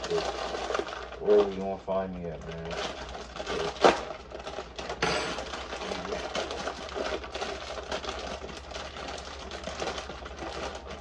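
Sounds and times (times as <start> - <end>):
sharp kitchen clatter: 5.0 - 5.5
cooking crackling: 5.0 - 5.6.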